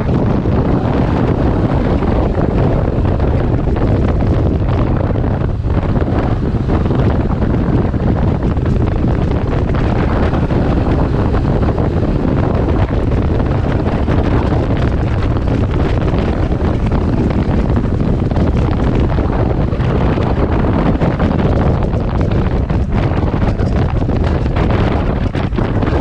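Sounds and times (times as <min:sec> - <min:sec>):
wind buffeting microphone: 0:00.0 - 0:26.0.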